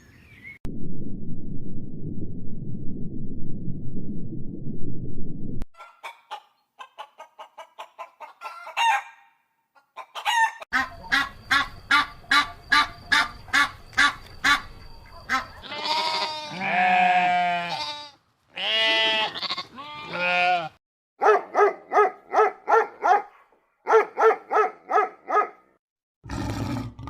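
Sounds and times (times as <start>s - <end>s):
chickens clucking: 5.8s - 9.1s, 9.8s - 15.6s
chicken long drawn-out calls: 5.8s - 14.7s.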